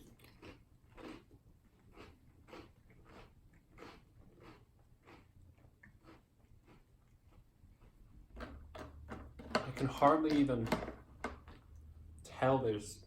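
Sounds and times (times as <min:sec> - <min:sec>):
person chewing crunchy cereal: 0:00.0 - 0:08.7.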